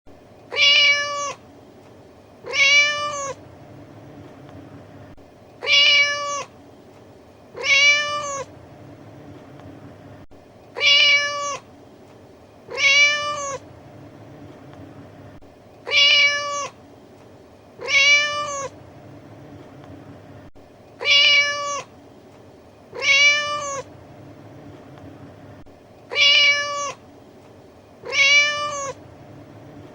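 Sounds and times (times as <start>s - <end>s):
cat meowing: 0.5s - 1.4s, 2.4s - 3.4s, 5.6s - 6.5s, 7.6s - 8.5s, 10.8s - 11.7s, 12.7s - 13.6s, 15.8s - 16.8s, 17.8s - 18.8s, 21.0s - 21.9s, 22.9s - 23.9s, 26.1s - 27.0s, 28.0s - 29.0s.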